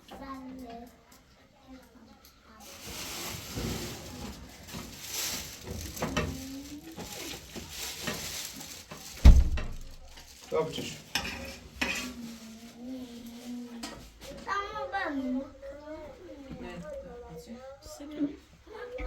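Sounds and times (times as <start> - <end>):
food sizzling in a pan: 2.6 - 9.0, 10.2 - 14.2
heavy thump: 9.2 - 10.1
utensils scraping cookware: 10.8 - 12.3.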